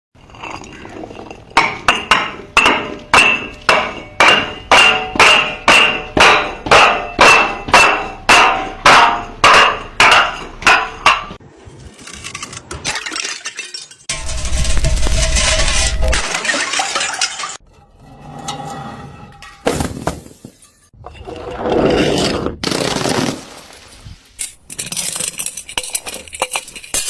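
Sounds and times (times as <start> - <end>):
rough rattling noise: 14.1 - 16.4.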